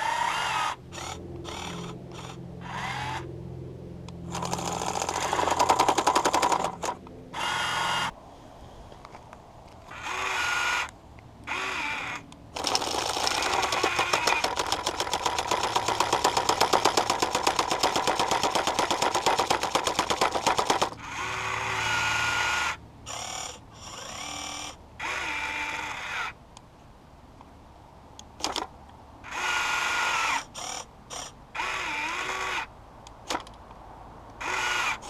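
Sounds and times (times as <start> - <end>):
small motors whirring: 0.0 - 3.3, 4.3 - 8.1, 9.8 - 26.4, 28.4 - 32.7, 34.4 - 35.0
model jackhammer hammering ice: 4.3 - 7.0, 12.6 - 21.0.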